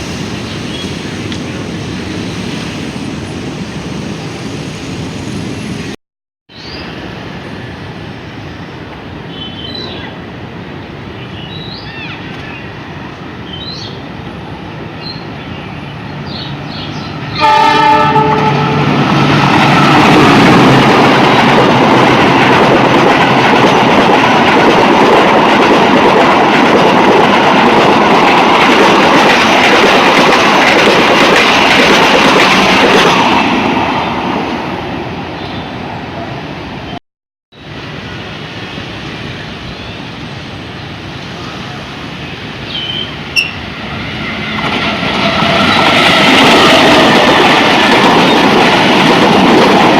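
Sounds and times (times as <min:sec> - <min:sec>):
passing train engine and wheels: 0:00.0 - 0:37.0, 0:37.6 - 0:49.9
locomotive horn blast: 0:17.3 - 0:19.0.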